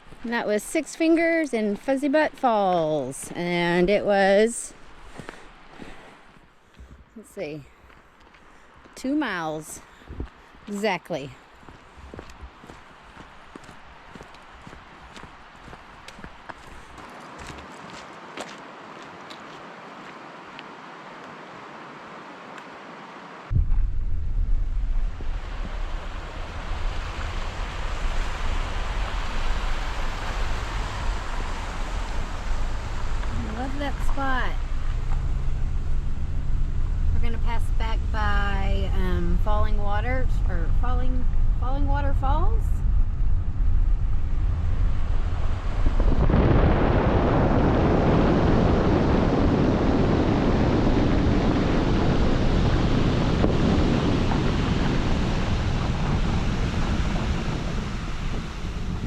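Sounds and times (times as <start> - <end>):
steady rushing noise: 21.5 - 59.0
low rumble: 23.5 - 59.0.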